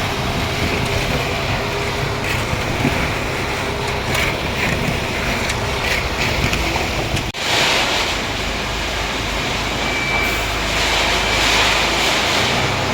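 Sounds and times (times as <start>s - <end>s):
concrete mixer running: 0.0s - 9.3s.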